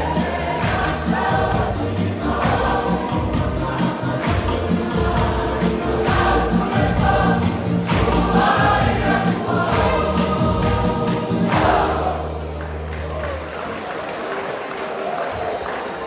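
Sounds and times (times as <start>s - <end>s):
choir singing a hymn: 0.0s - 12.8s
instrumental backing with bass: 0.0s - 13.2s.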